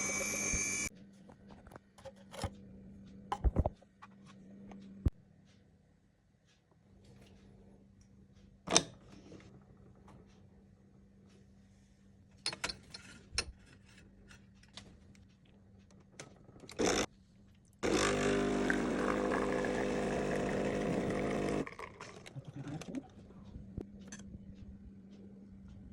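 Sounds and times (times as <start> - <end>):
espresso machine pump buzzing: 0.0 - 0.9, 17.8 - 21.8.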